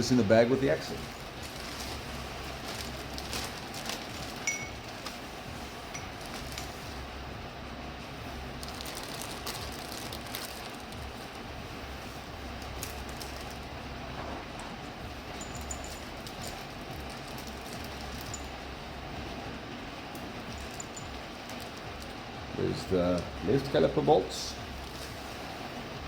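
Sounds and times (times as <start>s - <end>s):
small metal parts clicking and rustling: 0.6s - 5.2s, 5.9s - 7.0s, 14.6s - 18.7s, 20.1s - 22.2s.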